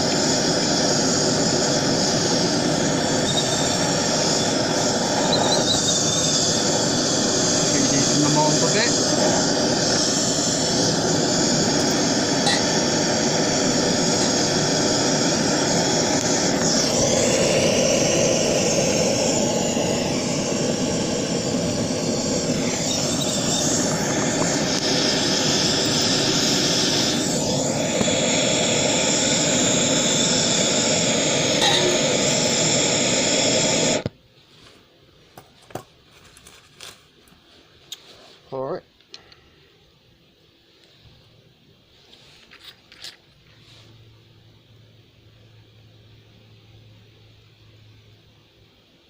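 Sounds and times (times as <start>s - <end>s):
torch flame roaring: 0.0s - 34.1s.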